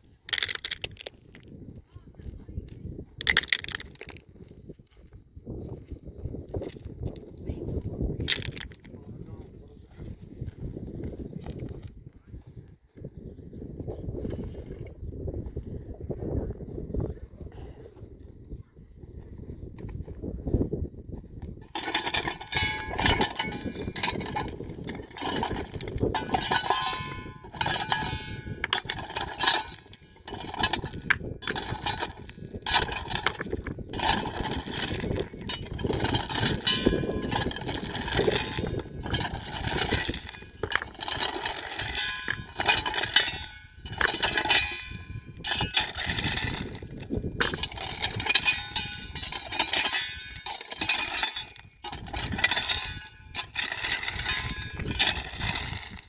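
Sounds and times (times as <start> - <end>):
livestock bells clanking: 21.7 - 33.2, 34.0 - 46.6, 47.4 - 56.0.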